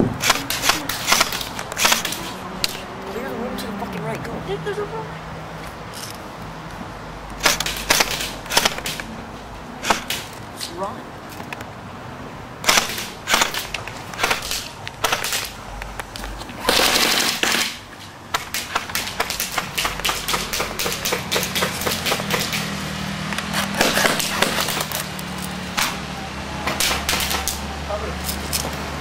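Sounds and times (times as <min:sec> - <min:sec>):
airsoft guns firing: 0:00.1 - 0:02.8, 0:07.4 - 0:09.1, 0:09.8 - 0:10.4, 0:12.6 - 0:15.6, 0:16.6 - 0:22.8, 0:23.8 - 0:25.1, 0:26.7 - 0:27.6.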